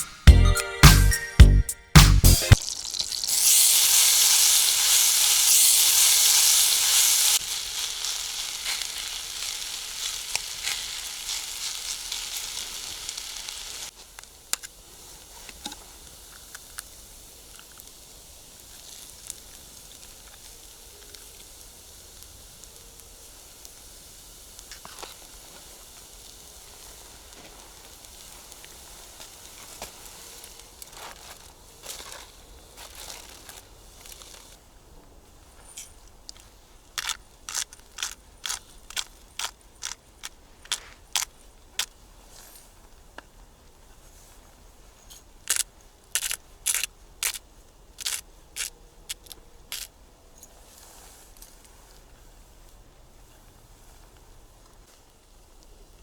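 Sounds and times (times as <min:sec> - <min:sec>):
batter sizzling in a pan: 0:02.5 - 0:34.6
small crackles: 0:02.6 - 0:56.0.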